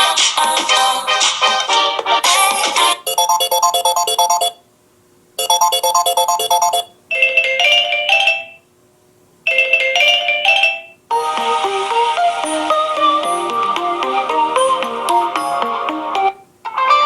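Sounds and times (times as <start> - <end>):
fuller ringtone tune: 3.0 - 4.6, 5.4 - 8.6, 9.5 - 11.0
electronic ringtone melody: 3.1 - 4.6, 5.4 - 8.6.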